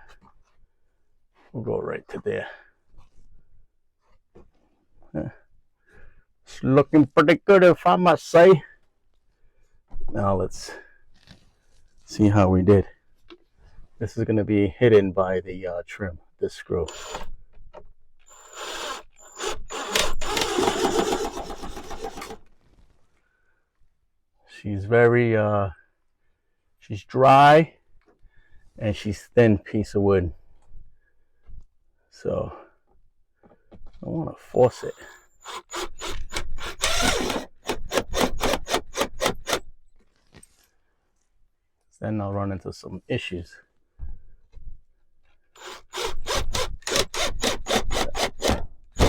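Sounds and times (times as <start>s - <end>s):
power drill driving a screw: 16.9s - 17.4s, 18.2s - 22.5s, 34.6s - 39.7s, 45.6s - 49.0s.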